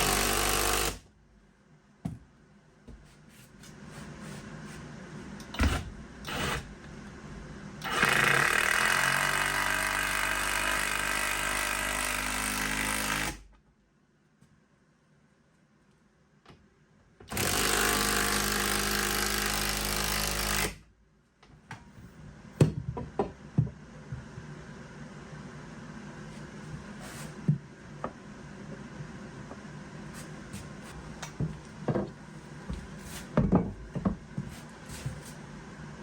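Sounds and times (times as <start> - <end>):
wood and tools knocking: 31.3 - 34.5.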